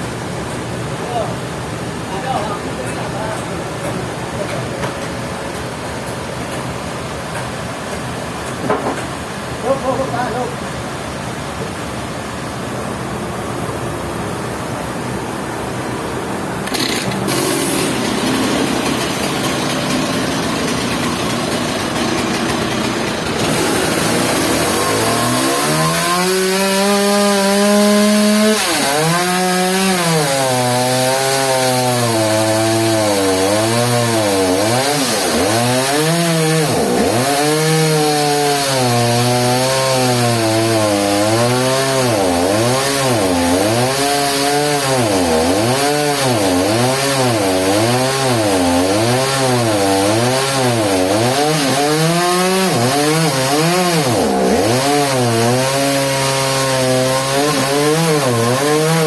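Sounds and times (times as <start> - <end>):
chainsaw cutting wood: 16.6 - 59.0.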